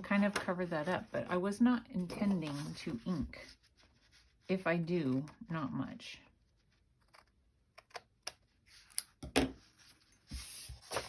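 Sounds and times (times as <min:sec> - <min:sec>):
paper rustling and sliding: 0:02.0 - 0:04.5, 0:09.7 - 0:11.0.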